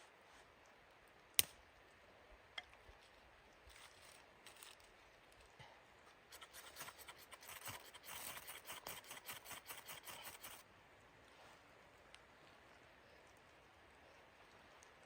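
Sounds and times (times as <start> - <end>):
scraping rasping strokes: 6.3 - 10.6.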